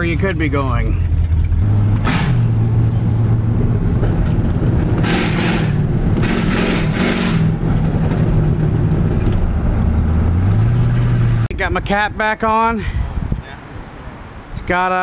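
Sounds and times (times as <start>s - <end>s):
pickup truck engine running: 0.0s - 11.2s.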